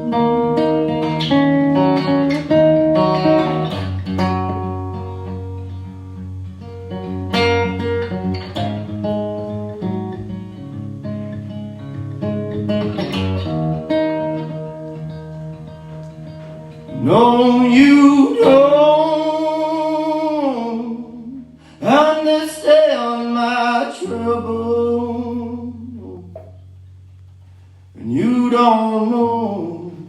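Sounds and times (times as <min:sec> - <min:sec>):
acoustic guitar playing: 0:00.0 - 0:30.0
person singing: 0:16.9 - 0:26.5, 0:28.0 - 0:30.0.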